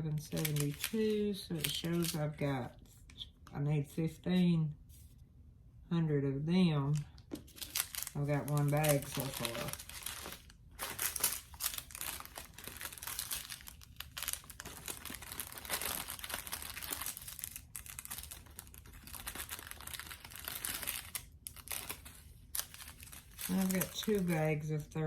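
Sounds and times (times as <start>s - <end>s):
plastic bags crinkling: 0.0s - 2.4s, 7.0s - 24.6s.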